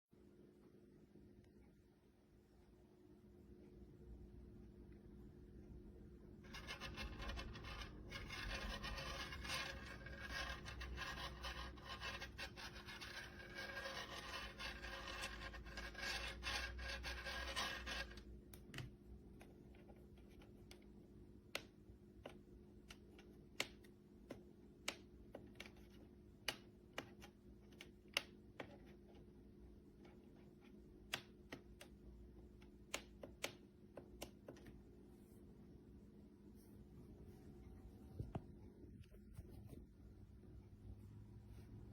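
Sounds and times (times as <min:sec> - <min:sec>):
rubbing and scraping: 0:06.4 - 0:18.3.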